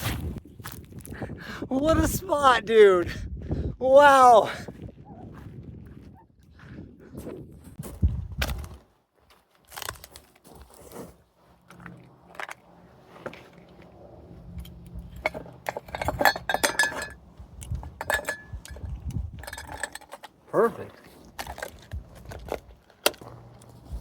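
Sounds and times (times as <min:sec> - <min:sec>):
glassware clinking: 0:15.9 - 0:17.2, 0:18.0 - 0:18.8.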